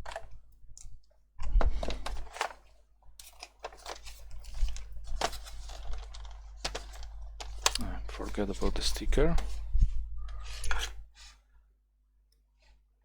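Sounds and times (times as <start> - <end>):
plastic housing clicking and crackling: 1.6 - 9.6.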